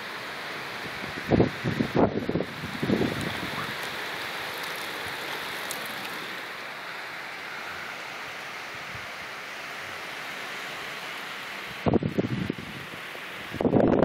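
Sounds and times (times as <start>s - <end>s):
heavy rain: 0.0s - 14.0s
strong wind: 0.7s - 4.3s, 11.6s - 14.0s.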